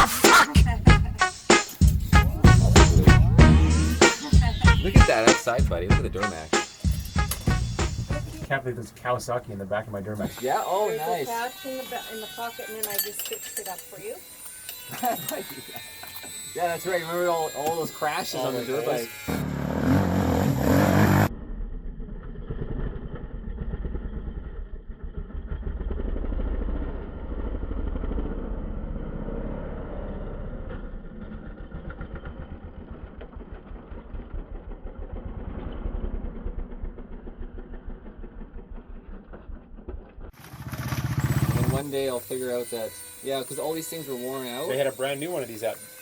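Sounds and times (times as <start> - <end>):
dirt bike engine revving: 0.0 - 8.4, 18.3 - 21.6, 22.2 - 39.8, 40.4 - 45.5.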